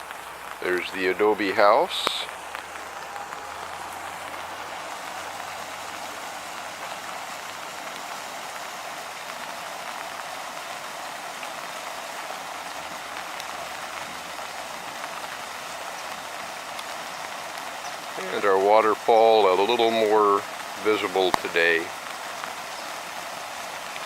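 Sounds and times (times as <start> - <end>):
water rushing over waterfall: 0.0 - 24.0.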